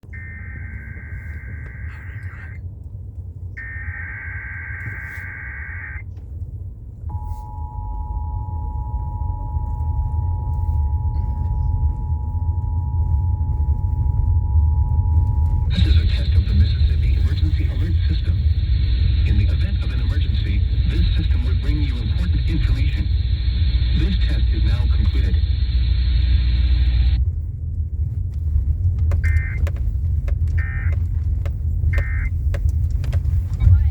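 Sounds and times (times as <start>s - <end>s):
digital data tone bursts: 0.0s - 2.6s, 3.6s - 6.0s, 32.0s - 32.3s
radio audio: 0.0s - 2.6s, 3.6s - 6.0s, 10.0s - 27.2s, 29.1s - 29.8s, 30.5s - 31.0s, 32.0s - 32.4s, 33.6s - 33.9s
low rumble: 0.0s - 33.9s
two-tone attention signal: 0.1s - 2.6s, 3.6s - 6.0s, 7.1s - 15.9s.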